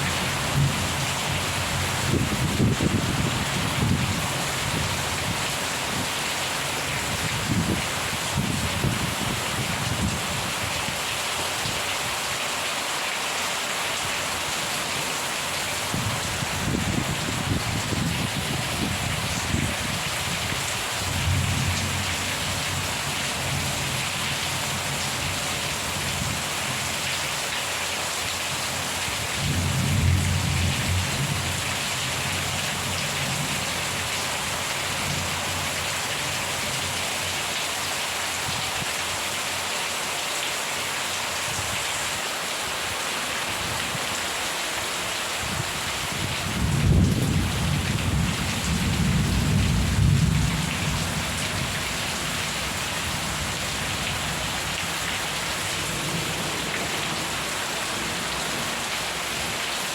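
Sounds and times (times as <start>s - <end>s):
heavy rain: 0.0s - 59.9s
low rolling thunder: 29.4s - 31.6s, 46.3s - 54.8s.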